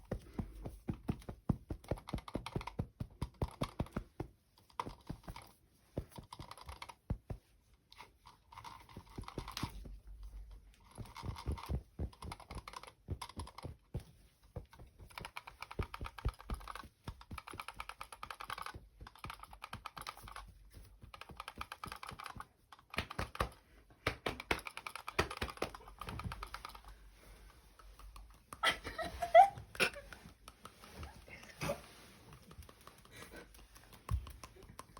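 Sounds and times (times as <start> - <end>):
rapid clicking and tapping: 0.0 - 27.0.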